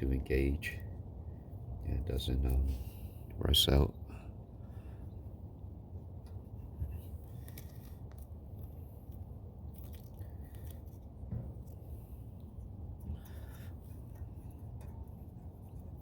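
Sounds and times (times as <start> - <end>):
low background rumble: 0.0 - 16.0
faint scrapes and light clicks: 6.7 - 16.0.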